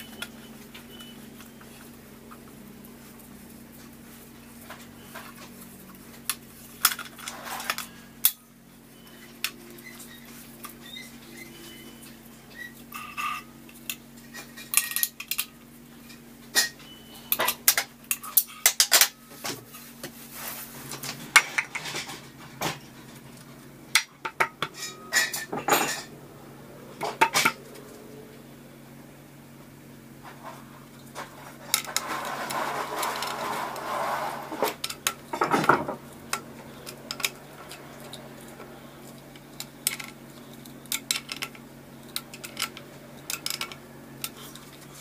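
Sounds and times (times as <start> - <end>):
steady low hum: 0.0 - 45.0
metal parts and tools clinking: 11.7 - 19.2, 24.0 - 26.2, 31.2 - 45.0.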